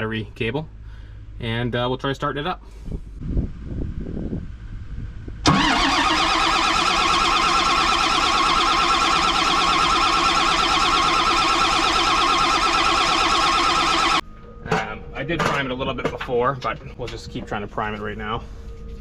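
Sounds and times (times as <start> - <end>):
starter motor cranking diesel engine: 5.4 - 14.2.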